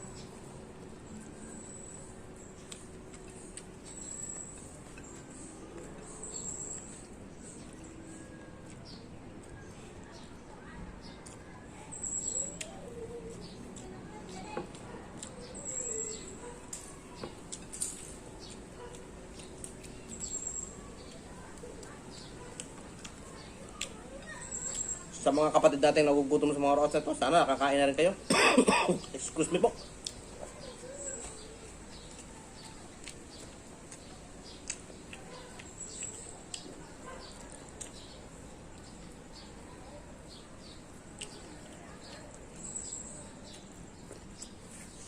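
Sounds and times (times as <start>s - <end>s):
chewing clicks and lip smacks: 2.6s - 6.1s, 16.5s - 24.0s, 29.8s - 39.1s, 40.6s - 45.0s
short high squeaks: 11.9s - 12.6s
person chewing: 31.9s - 38.8s.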